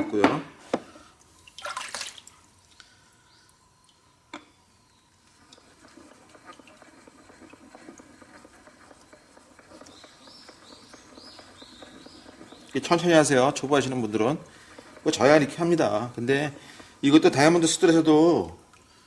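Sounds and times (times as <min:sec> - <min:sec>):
metal rasping on sharpening plate: 0:05.7 - 0:13.2
bird chirping: 0:09.8 - 0:13.1.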